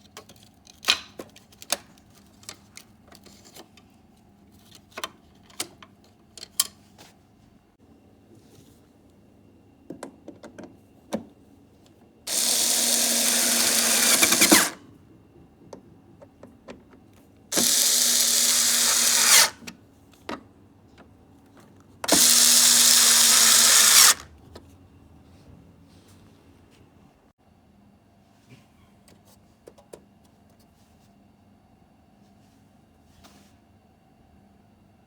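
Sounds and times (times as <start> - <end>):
power drill running: 12.3 - 14.8, 17.5 - 19.6, 22.1 - 24.2.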